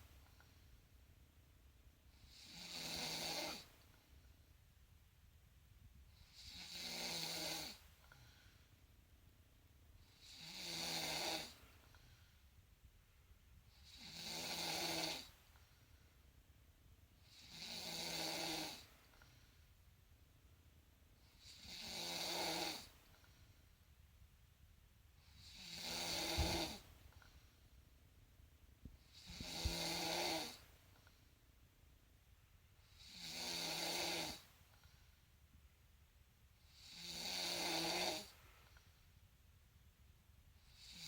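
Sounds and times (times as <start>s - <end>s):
person snoring: 2.3s - 3.6s, 6.4s - 7.8s, 10.2s - 11.6s, 17.3s - 18.8s, 21.4s - 22.9s, 25.4s - 26.8s, 29.1s - 30.6s, 33.0s - 34.4s, 36.7s - 38.3s.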